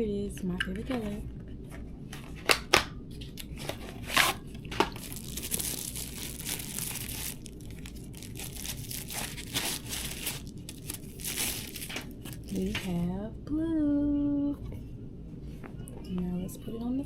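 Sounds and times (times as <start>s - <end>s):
packaging snapping: 2.4s - 12.9s
packaging rustling: 3.4s - 12.9s
packaging torn and crinkled: 3.4s - 12.9s.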